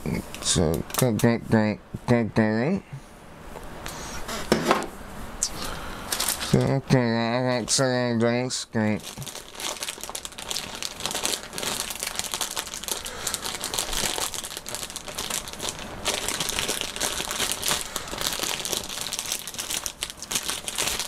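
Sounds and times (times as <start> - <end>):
plastic wrap crinkling: 6.1 - 6.8, 8.8 - 21.0.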